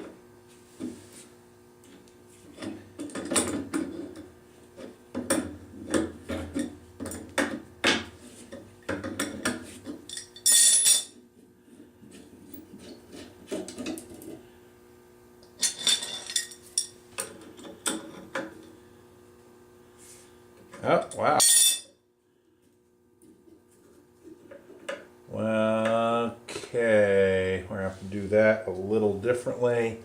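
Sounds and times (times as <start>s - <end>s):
metal tools clinking and scraping: 10.1s - 11.2s, 15.6s - 17.0s, 21.0s - 21.9s.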